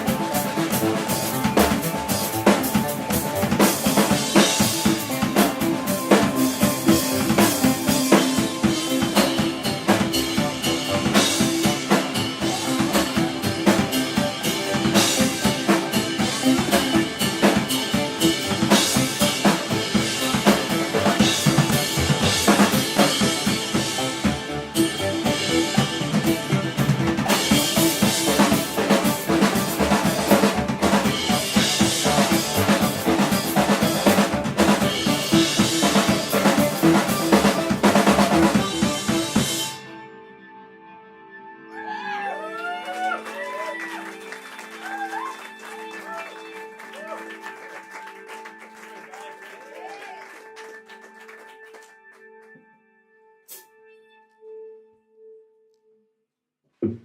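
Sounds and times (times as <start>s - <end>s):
drum kit hitting fast: 0.0s - 39.8s
rock band playing live: 0.0s - 40.5s.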